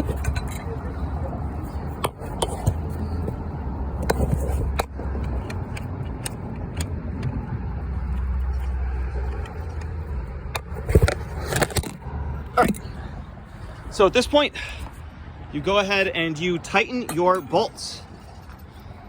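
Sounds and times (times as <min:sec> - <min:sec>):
metal tools clicking and knocking: 0:00.0 - 0:00.8
steady low rumble: 0:00.0 - 0:16.7.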